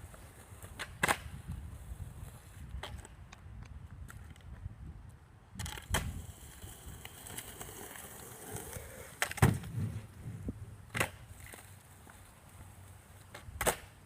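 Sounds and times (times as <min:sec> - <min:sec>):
skateboard clacking on ground: 0:00.0 - 0:10.2, 0:10.8 - 0:14.0
skateboard rolling on hard ground: 0:05.6 - 0:14.0.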